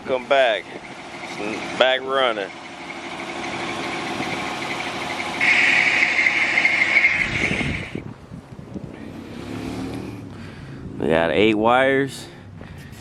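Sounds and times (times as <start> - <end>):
car engine running: 0.0 - 11.2, 12.1 - 13.0
loud high steady whine: 0.1 - 8.0.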